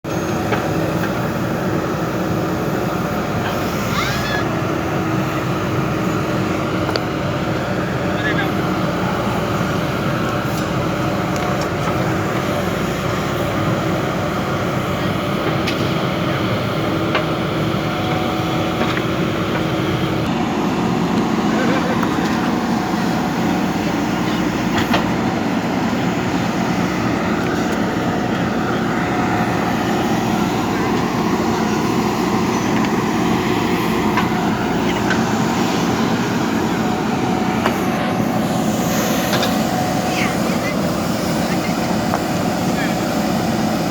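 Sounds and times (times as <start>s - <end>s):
diesel engine running: 0.0s - 43.9s.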